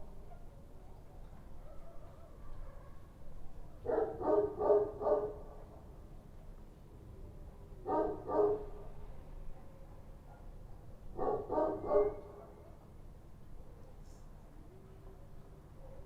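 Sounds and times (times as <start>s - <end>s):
dog barking: 0.3s - 3.1s, 3.8s - 5.5s, 7.9s - 8.8s, 9.5s - 12.8s, 15.8s - 16.0s.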